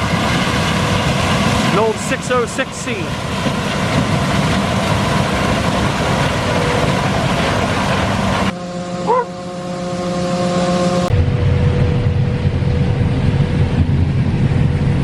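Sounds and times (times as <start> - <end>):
combine harvester running: 0.0 - 15.0
deep rumble: 0.0 - 15.0
machine hum with whining tones: 3.4 - 15.0.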